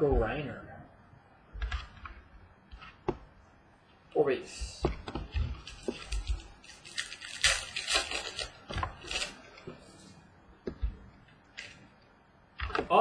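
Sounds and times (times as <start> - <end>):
card packs rustling and crinkling: 5.6 - 9.9.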